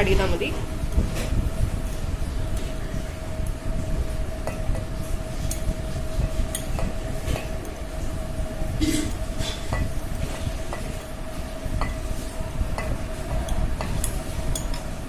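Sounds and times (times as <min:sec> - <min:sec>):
low rumble and hum: 0:00.0 - 0:15.0
spoon clinking against a bowl: 0:06.5 - 0:07.5, 0:11.8 - 0:14.9.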